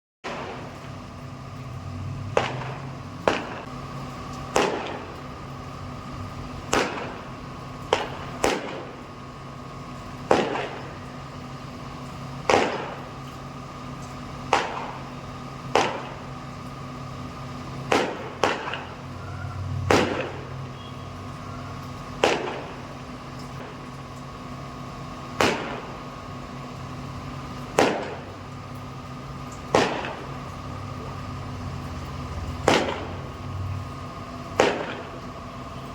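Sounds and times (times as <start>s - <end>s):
steady low hum: 0.2s - 35.9s
fireworks bangs: 2.4s - 3.7s, 4.5s - 5.1s, 10.3s - 10.8s, 19.9s - 20.5s, 25.4s - 25.9s, 32.6s - 33.2s, 34.6s - 35.2s.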